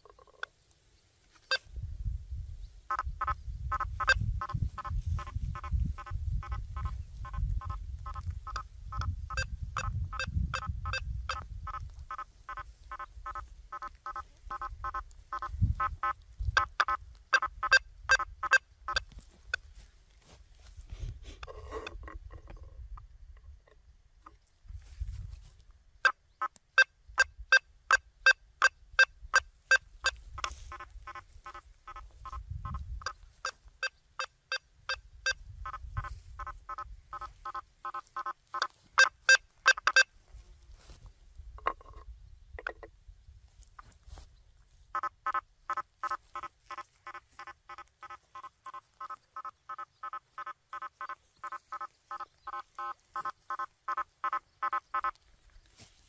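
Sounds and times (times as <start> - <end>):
metal detector beeping: 1.4 - 1.7, 6.4 - 19.6, 33.0 - 35.4, 37.1 - 40.1.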